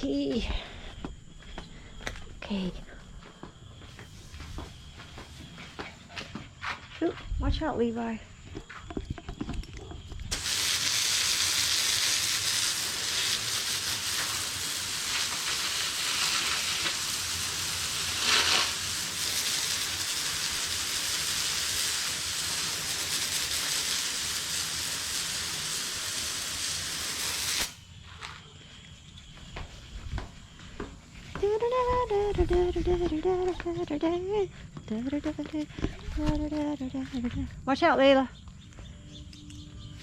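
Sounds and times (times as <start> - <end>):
hose spraying water: 10.3 - 27.8.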